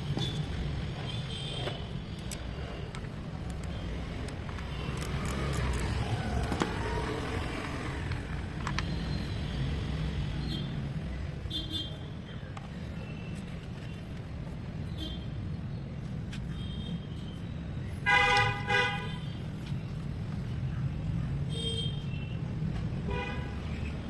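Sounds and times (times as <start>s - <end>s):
traffic engine rumble: 0.0s - 24.0s
vehicle horn toots: 18.1s - 19.2s.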